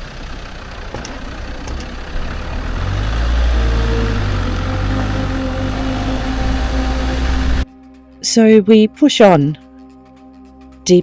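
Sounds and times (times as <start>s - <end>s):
road and body noise: 0.0s - 7.6s
vehicle engine running: 0.0s - 7.6s.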